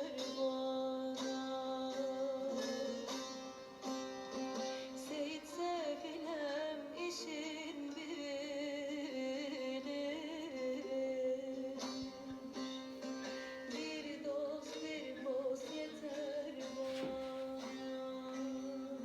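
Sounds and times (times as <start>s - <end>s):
plucked string notes: 0.0s - 19.0s
singing-like voice: 13.6s - 19.0s.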